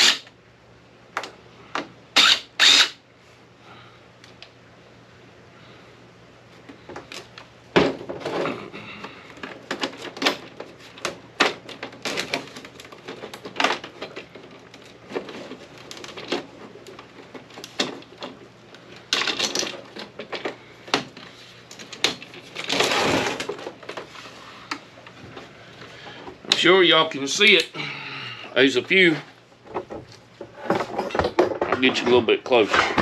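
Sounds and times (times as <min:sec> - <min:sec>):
scraping clatters: 0:29.7 - 0:33.0.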